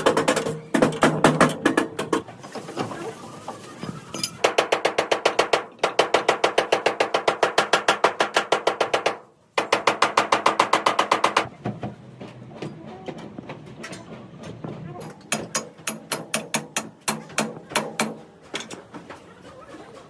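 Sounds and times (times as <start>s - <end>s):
rapid hammer blows on metal: 4.4s - 11.5s, 15.0s - 18.7s.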